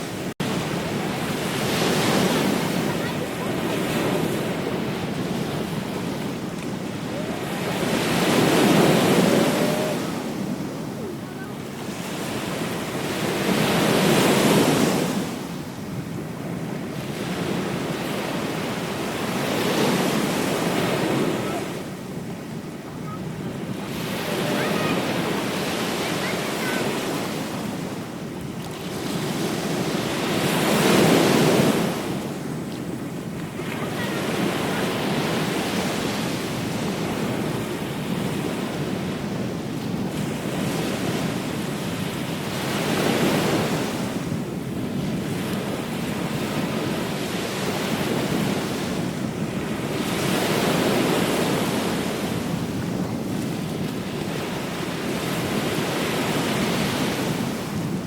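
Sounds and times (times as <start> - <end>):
ocean waves breaking: 0.0 - 58.0.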